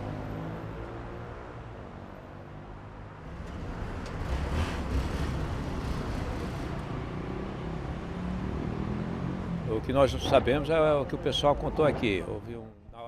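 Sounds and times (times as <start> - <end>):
street traffic rumble: 0.0 - 13.0
vehicle passing: 2.4 - 12.7.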